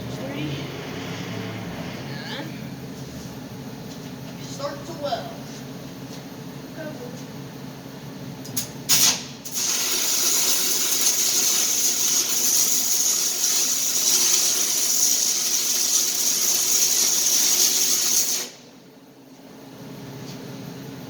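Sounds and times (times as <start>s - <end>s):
welding electrode strike: 8.6s - 18.6s
welding arc sizzling hiss: 8.6s - 18.7s.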